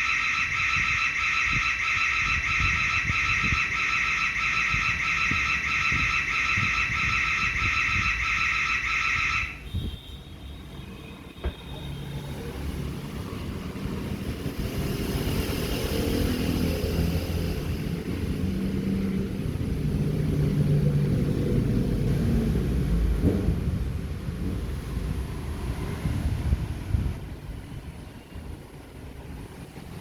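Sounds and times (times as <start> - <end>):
vehicle engine rumble: 9.7 - 30.0.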